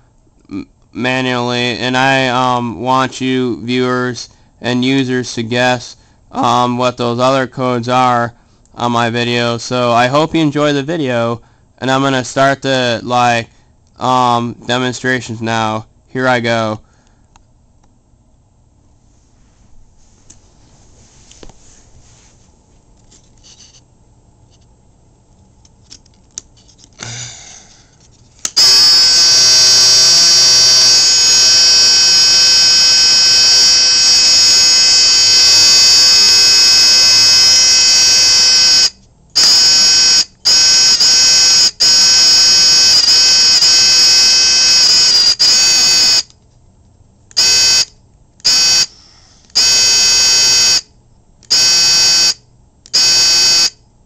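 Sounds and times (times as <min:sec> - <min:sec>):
high-pitched alarm tone: 0:28.6 - 0:46.3, 0:47.4 - 0:49.0, 0:49.6 - 0:50.9, 0:51.5 - 0:53.8.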